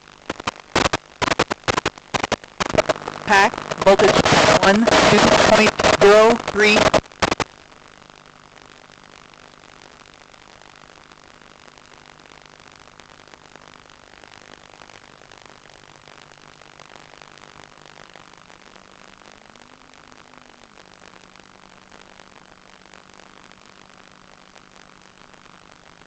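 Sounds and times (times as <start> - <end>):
radio link hiss: 0.0 - 7.6, 15.0 - 26.0.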